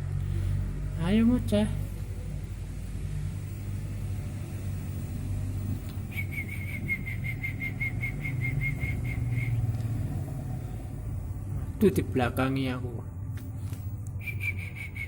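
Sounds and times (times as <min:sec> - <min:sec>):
steady low rumble: 0:00.0 - 0:15.0
songbird calling high notes: 0:06.1 - 0:09.7.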